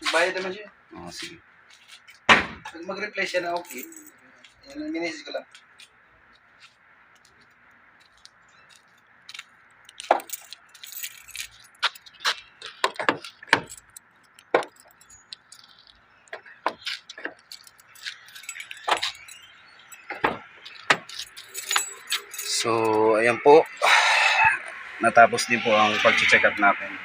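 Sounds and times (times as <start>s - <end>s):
small metal objects clinking: 8.1s - 23.8s.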